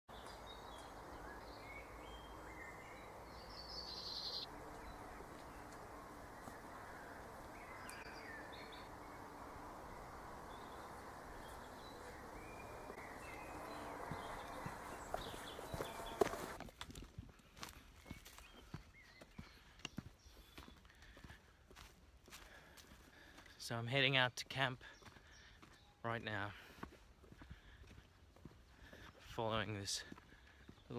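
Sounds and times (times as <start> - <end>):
bird calls: 0.1 - 16.6, 18.0 - 21.5.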